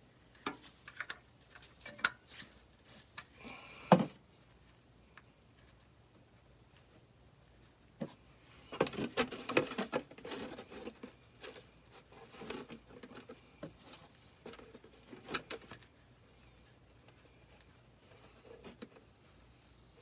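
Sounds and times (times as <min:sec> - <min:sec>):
tool clicks taps and scrapes: 0:00.4 - 0:03.3.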